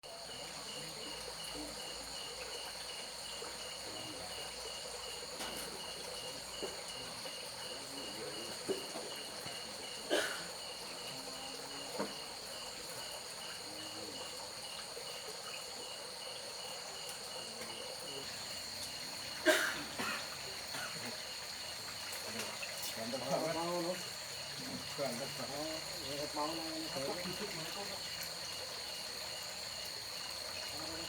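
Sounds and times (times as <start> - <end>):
crickets trilling: 0.0 - 31.0
insect chirp pulsing: 0.1 - 31.0.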